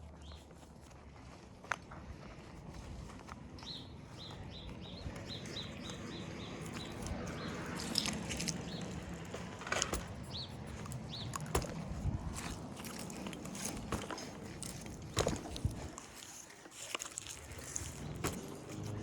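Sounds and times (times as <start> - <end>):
small bird chirping: 3.6 - 14.0.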